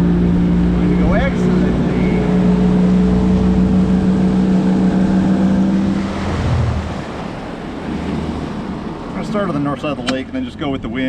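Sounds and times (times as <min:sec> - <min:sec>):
outboard motor running: 0:00.0 - 0:10.4.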